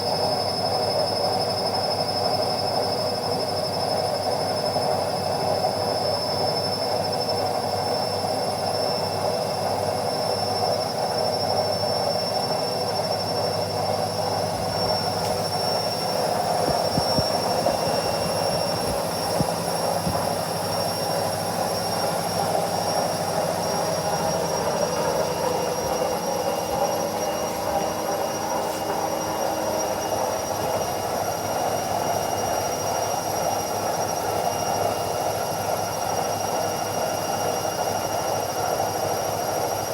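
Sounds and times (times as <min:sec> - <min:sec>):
high-pitched whines: 0:13.7 - 0:34.6
washing machine whooshing: 0:13.7 - 0:35.8.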